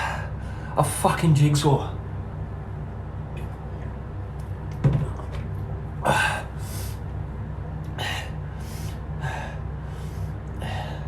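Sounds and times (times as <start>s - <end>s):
steady low hum: 0.0s - 11.0s
low thud: 4.8s - 5.5s
man gasping for breath: 8.0s - 11.0s.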